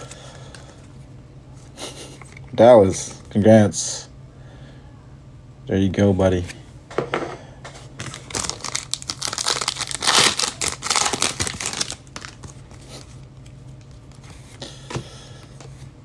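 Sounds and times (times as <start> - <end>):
plastic wrapping crackling: 8.0 - 13.1.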